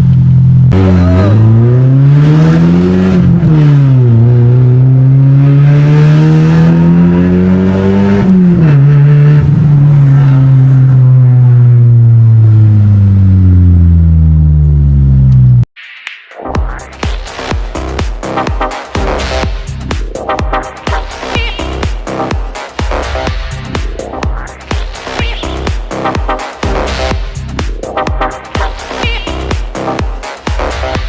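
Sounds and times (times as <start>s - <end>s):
car engine accelerating: 0.0s - 15.7s.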